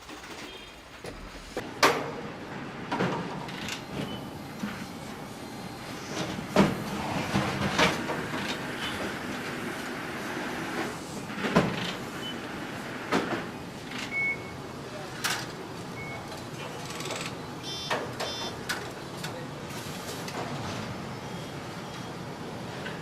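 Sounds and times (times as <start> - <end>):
short high electronic beeps: 17.6 - 18.5.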